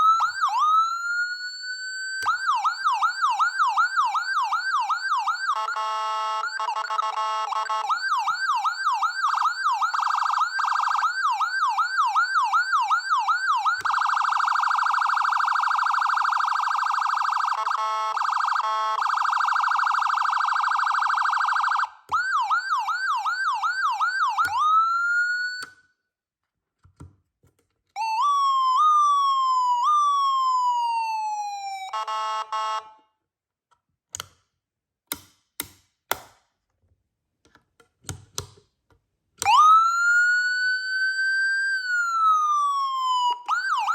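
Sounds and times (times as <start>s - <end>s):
electronic siren cycling tones: 0.0s - 25.7s, 28.0s - 32.8s, 39.4s - 43.9s.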